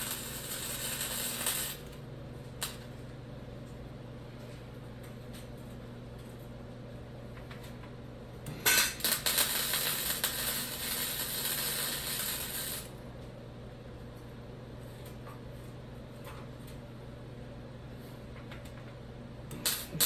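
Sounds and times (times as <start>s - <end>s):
arc welder crackling sizzle: 0.0s - 4.0s, 7.4s - 13.4s, 19.5s - 20.0s.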